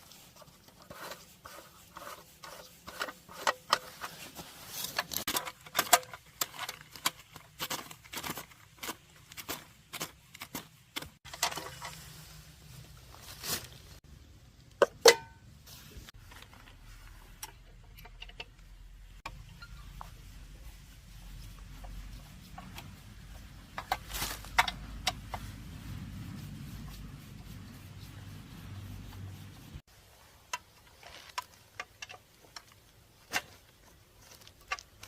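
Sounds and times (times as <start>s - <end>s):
small clicks and knocks on metal: 17.4s - 19.8s, 30.5s - 35.0s.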